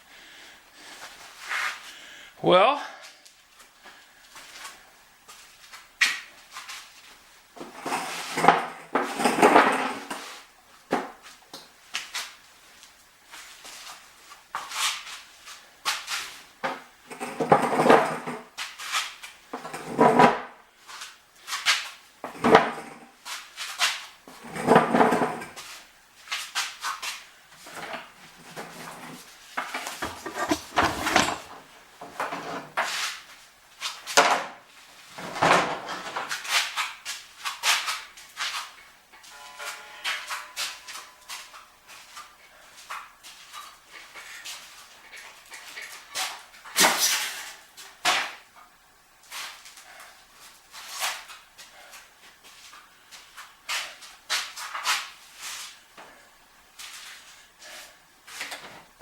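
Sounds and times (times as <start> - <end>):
metal parts clanking: 30.0 - 31.6
metal scraping and rattling: 30.0 - 31.6, 39.2 - 41.6.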